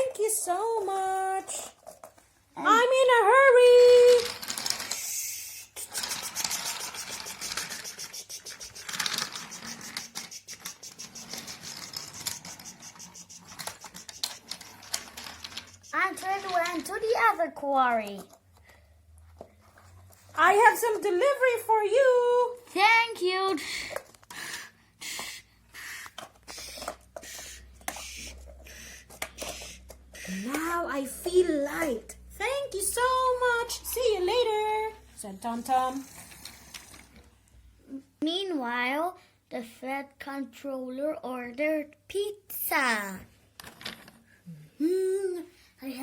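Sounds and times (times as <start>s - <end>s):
toy train wheels clicking on rails: 3.9s - 17.4s, 24.3s - 31.5s, 35.3s - 37.2s.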